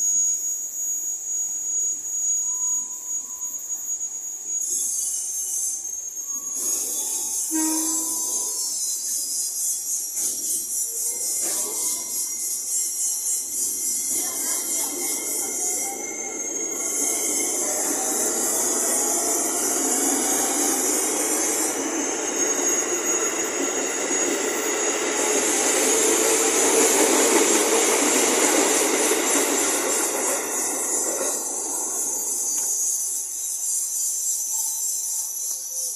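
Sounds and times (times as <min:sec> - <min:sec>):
passing train hiss: 0:05.2 - 0:35.9
train horn toot: 0:07.5 - 0:08.6.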